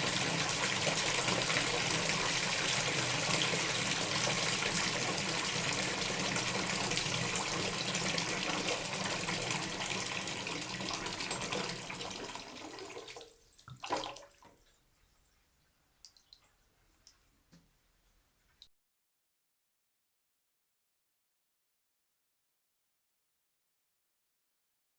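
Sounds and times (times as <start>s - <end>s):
tap water filling bathtub: 0.0s - 17.7s
faint water drips: 8.3s - 18.7s
water splashes: 12.6s - 14.7s.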